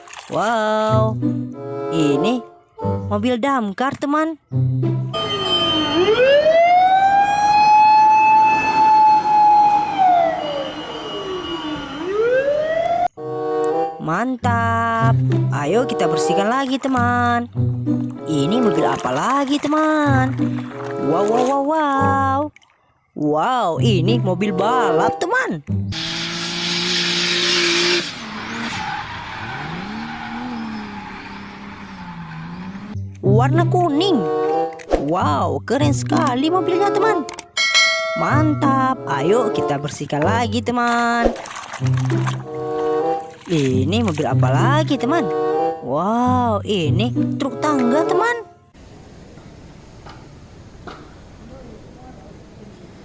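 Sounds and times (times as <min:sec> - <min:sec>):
fire truck siren wailing: 0:05.1 - 0:13.9
race car engine: 0:26.0 - 0:33.0
tires skidding: 0:26.0 - 0:33.0.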